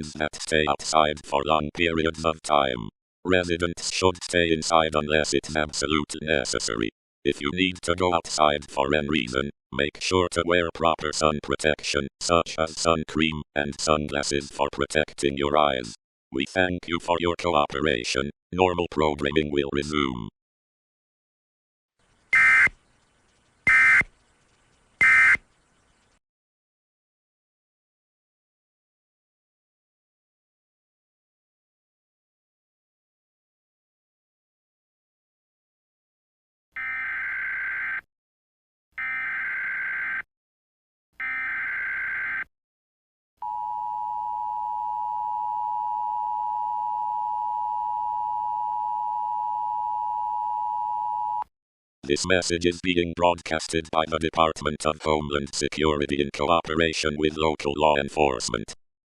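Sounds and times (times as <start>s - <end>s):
harsh buzzing data tone bursts: 22.3s - 22.8s, 23.4s - 25.4s.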